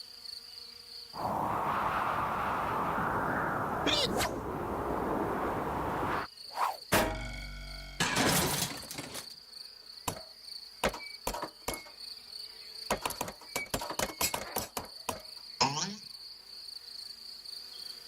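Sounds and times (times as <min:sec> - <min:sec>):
high insect whine: 0:00.0 - 0:08.0
low insect buzz: 0:00.0 - 0:08.0, 0:09.2 - 0:13.5, 0:14.9 - 0:18.0.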